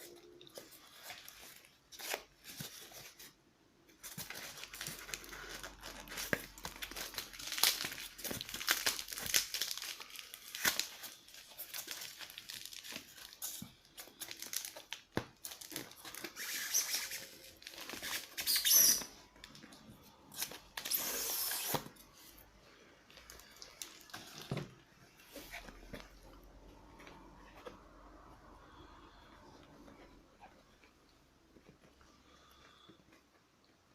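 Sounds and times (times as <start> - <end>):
packaging crinkling and tearing: 4.0 - 22.0, 23.1 - 24.6.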